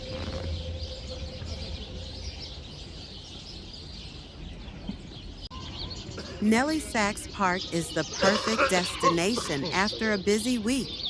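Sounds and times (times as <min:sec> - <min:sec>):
low rumble: 0:00.0 - 0:05.5
small birds chirping: 0:00.0 - 0:11.0.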